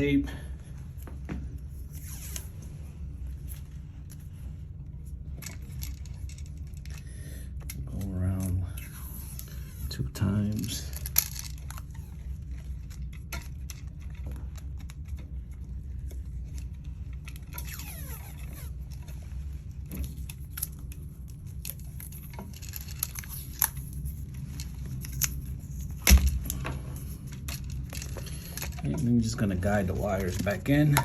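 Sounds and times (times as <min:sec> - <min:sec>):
tape peeling squeak: 0:01.9 - 0:02.6, 0:17.5 - 0:19.1.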